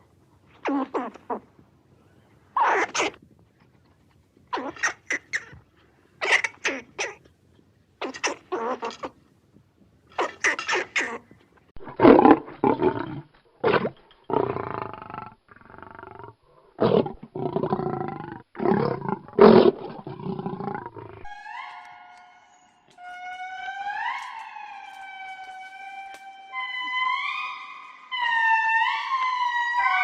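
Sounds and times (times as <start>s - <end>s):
large animal roaring and growling: 11.8s - 21.3s
pitched wailing tone: 21.3s - 30.0s.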